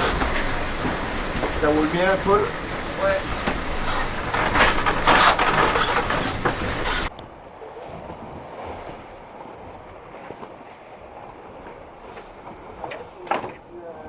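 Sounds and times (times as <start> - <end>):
winch grinding and clicking: 0.0 - 7.1
loud rushing wind and water: 0.0 - 12.8.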